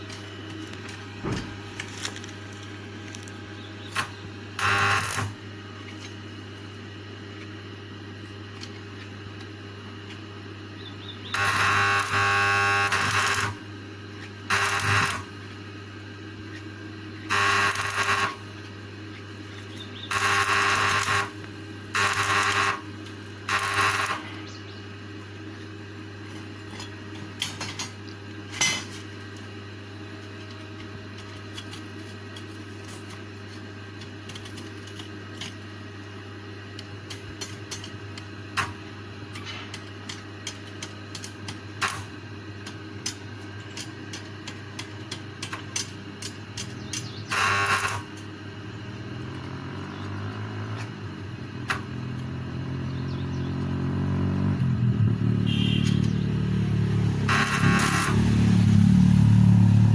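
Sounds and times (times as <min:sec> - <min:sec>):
steady low hum: 0:00.0 - 0:59.9
small power tool running: 0:03.1 - 0:05.4, 0:11.2 - 0:13.7, 0:14.4 - 0:15.6, 0:17.2 - 0:18.5, 0:19.7 - 0:24.6, 0:46.6 - 0:59.9.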